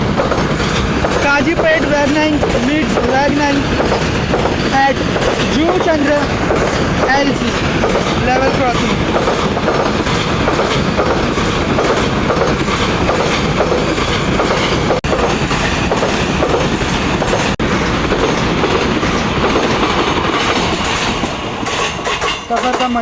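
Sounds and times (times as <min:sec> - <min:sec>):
train wheels clattering over rail joints: 0:00.0 - 0:23.0.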